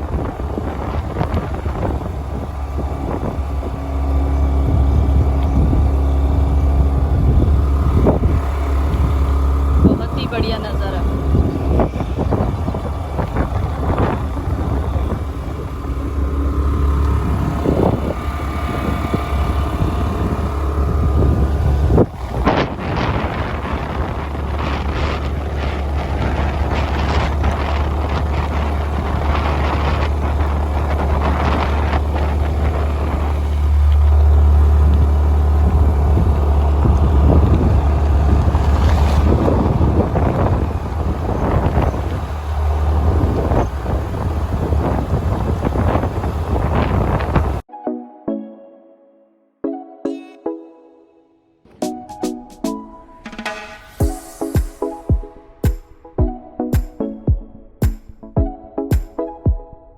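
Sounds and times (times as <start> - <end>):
wind buffeting microphone: 0.0 - 47.6
vehicle road noise: 0.0 - 47.7.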